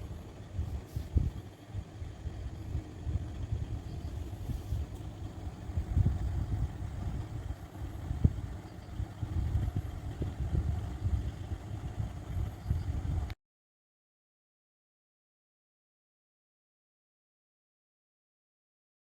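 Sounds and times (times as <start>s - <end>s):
subwoofer deep bass rumble: 0.0s - 13.3s.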